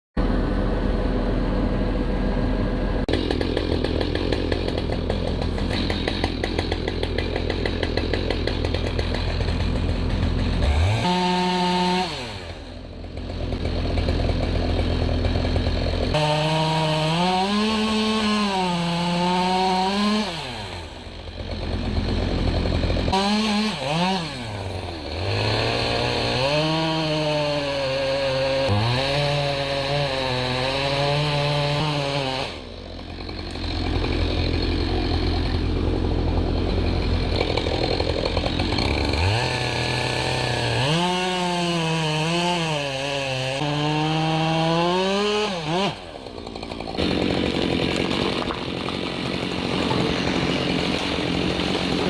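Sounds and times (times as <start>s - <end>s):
chainsaw cutting wood: 3.1s - 52.0s
chainsaw revving: 3.1s - 52.0s.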